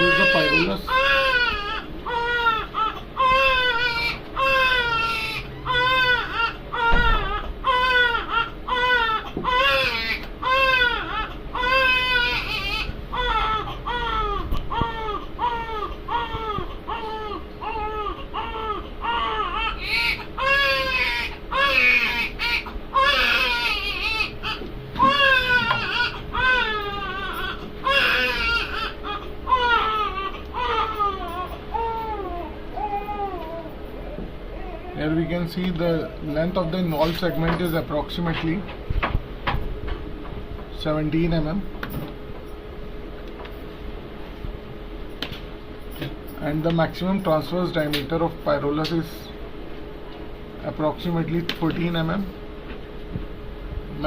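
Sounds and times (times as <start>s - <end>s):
infant crying: 0.0s - 35.1s.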